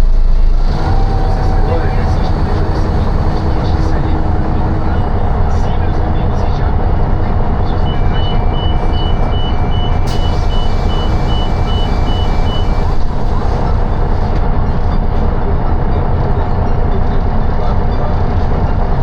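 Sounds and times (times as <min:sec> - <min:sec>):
high electronic beeps: 0:00.0 - 0:14.3
bus engine and road rumble: 0:00.0 - 0:19.0.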